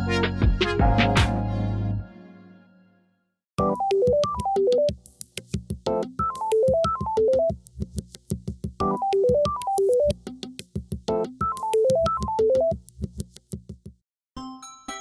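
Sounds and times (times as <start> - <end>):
phone ringtone melody: 3.6 - 4.9, 6.2 - 7.5, 11.4 - 12.7.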